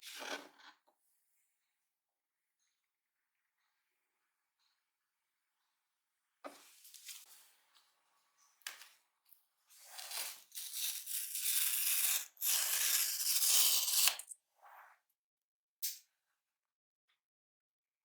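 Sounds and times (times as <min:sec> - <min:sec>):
packaging scrapes and rustles: 0:09.7 - 0:14.2
paper wrapping being torn: 0:09.9 - 0:14.3.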